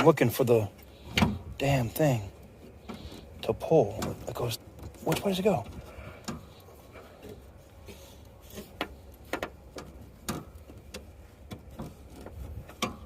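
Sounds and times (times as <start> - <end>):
car hood release clicking: 1.0 - 1.6.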